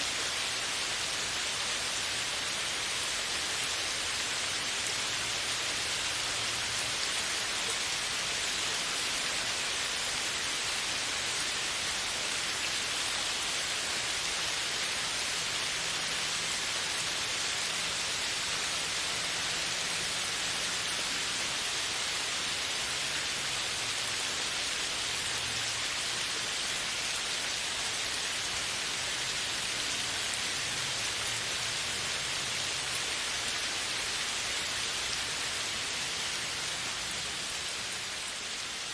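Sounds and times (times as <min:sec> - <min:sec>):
rain falling on leaves: 0:00.0 - 0:38.9.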